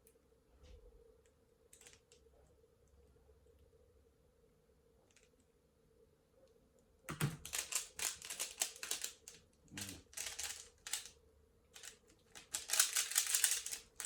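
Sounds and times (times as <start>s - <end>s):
puzzle cube plastic clicking: 7.1s - 11.1s, 11.8s - 14.0s.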